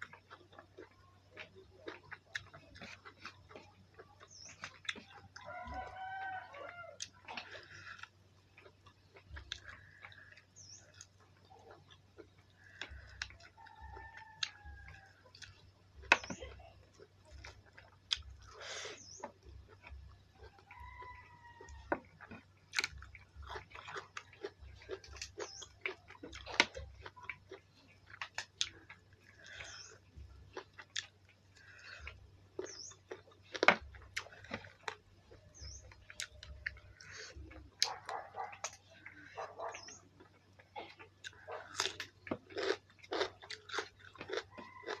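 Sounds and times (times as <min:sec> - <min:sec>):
close-up chewing: 0:00.0 - 0:45.0
chickens clucking: 0:34.2 - 0:42.0.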